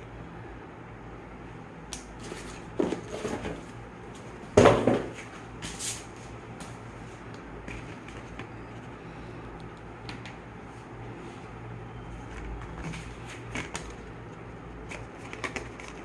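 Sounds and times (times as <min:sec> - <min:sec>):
steady low hum: 0:00.0 - 0:16.0
knocks and clatter of parts: 0:04.6 - 0:05.2
packaging rustling: 0:12.2 - 0:16.0.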